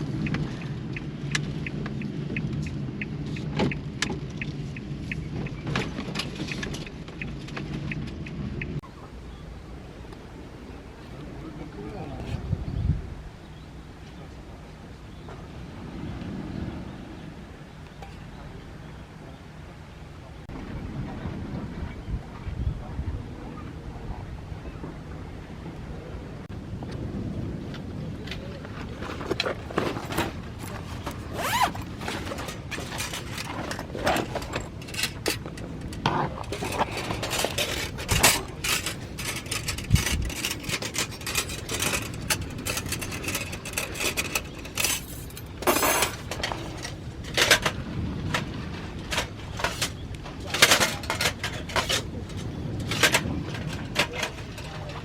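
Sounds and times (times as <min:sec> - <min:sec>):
rustling scrapes: 0:28.6 - 0:55.0
gear being handled: 0:29.0 - 0:47.6.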